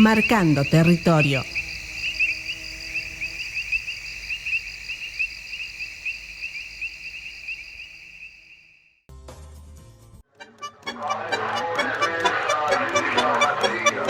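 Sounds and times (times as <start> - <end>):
insects chirping: 0.0 - 9.0.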